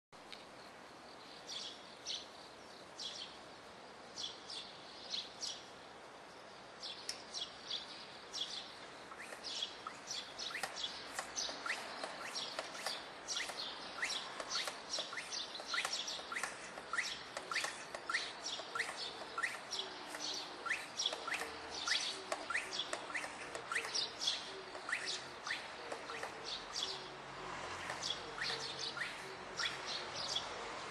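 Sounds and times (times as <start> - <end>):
shrike mimicking car alarm: 9.2 - 27.1, 27.9 - 30.4.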